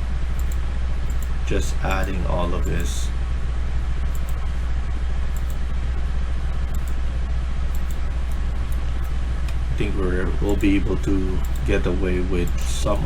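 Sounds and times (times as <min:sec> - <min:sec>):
low background hum: 0:00.0 - 0:13.0
computer mouse clicks: 0:00.3 - 0:01.3, 0:04.1 - 0:04.6, 0:05.3 - 0:05.6, 0:06.7 - 0:07.0, 0:07.7 - 0:09.6, 0:10.4 - 0:11.7.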